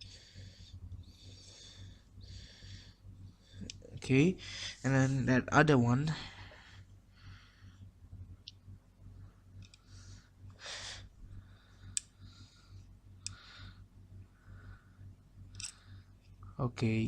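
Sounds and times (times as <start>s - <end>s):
light clicks of small parts: 9.6s - 9.9s, 15.5s - 16.6s.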